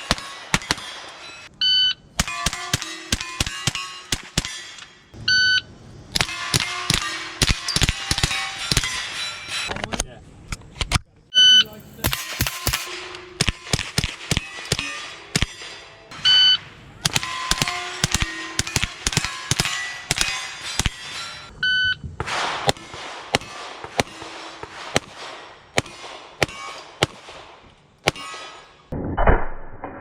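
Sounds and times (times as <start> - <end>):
steel plates ringing: 0.0 - 5.2, 6.2 - 9.8, 11.4 - 21.6, 23.4 - 27.2, 28.1 - 28.9
rapid gunshots: 12.0 - 15.6, 22.2 - 28.2.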